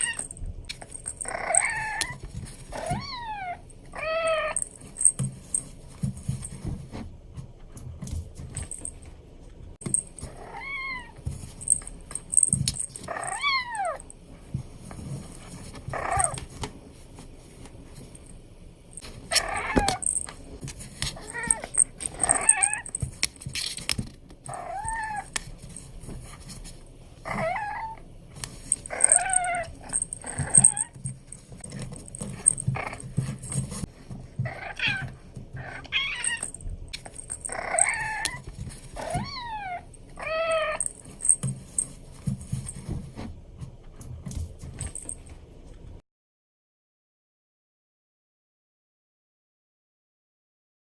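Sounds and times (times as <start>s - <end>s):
kitten meowing: 39.0s - 40.9s.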